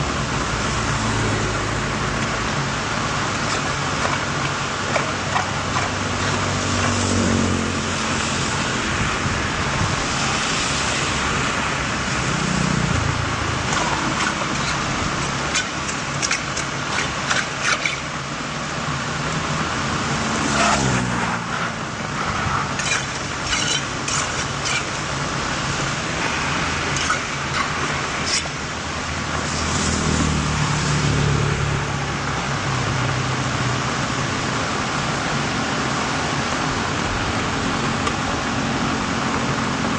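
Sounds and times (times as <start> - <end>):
rainwater rushing into drain: 0.0 - 20.2, 22.4 - 31.5
cars passing on wet road: 0.0 - 39.9
sharp ticks and splashes: 2.1 - 7.2, 12.0 - 18.3, 22.7 - 30.4.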